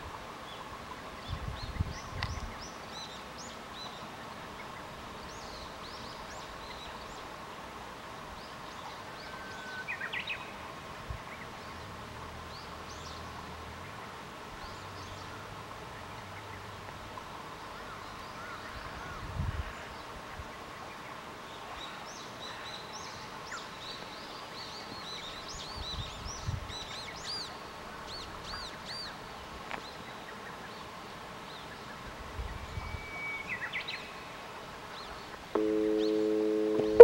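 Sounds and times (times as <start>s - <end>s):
steady chord of low tones: 35.6s - 37.0s.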